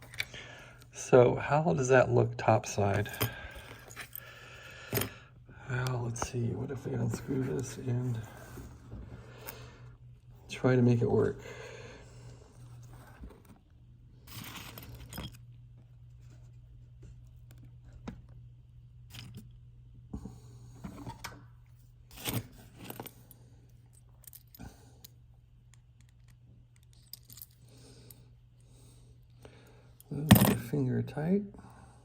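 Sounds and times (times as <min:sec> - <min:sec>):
low steady hum: 0:00.0 - 0:32.0
metallic clinks and rattles: 0:14.3 - 0:15.4, 0:26.8 - 0:28.2.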